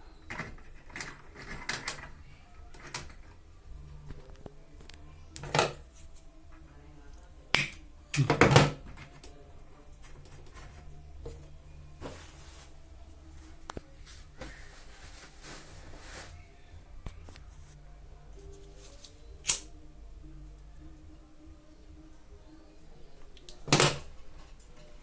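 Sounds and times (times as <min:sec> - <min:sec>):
rustling: 0:10.1 - 0:19.4.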